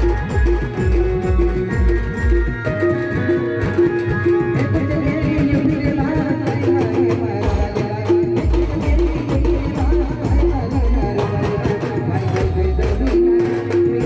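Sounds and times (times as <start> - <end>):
electronic keyboard tune: 0.0 - 14.0
pounding drums and percussion: 0.0 - 14.0.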